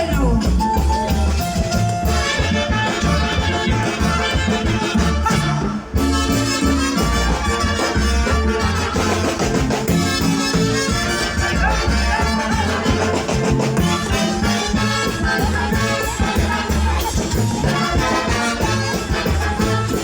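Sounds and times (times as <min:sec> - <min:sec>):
brass: 0:00.0 - 0:20.0
steady bass beat: 0:00.0 - 0:20.0.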